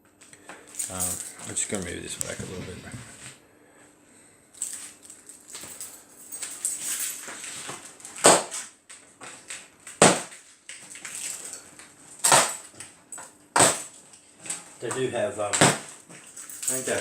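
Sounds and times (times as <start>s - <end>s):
cardboard scraping and crinkling: 1.4s - 3.4s.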